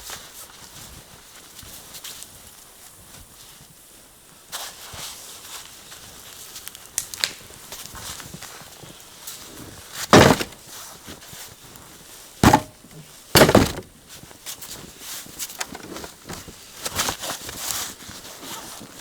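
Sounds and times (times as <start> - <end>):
crunching: 10.1 - 10.6, 12.4 - 13.9
light knocks: 12.4 - 12.8.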